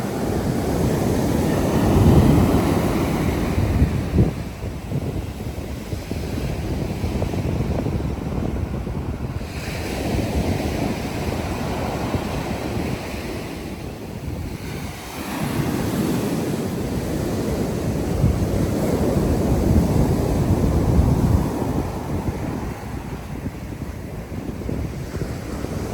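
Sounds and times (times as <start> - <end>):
sea waves washing onto beach: 0.0 - 25.9
wind buffeting microphone: 0.0 - 25.9.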